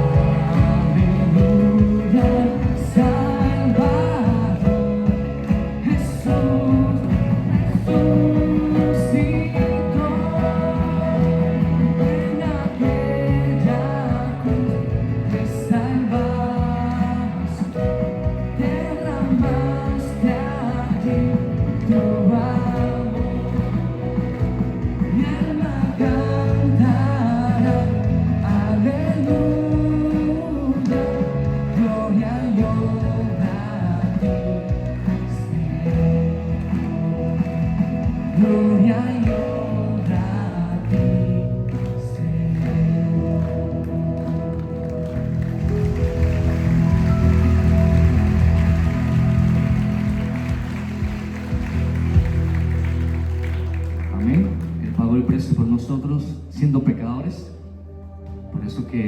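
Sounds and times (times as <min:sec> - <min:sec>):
person singing: 0:00.0 - 0:44.6
worship band playing: 0:00.0 - 0:59.0.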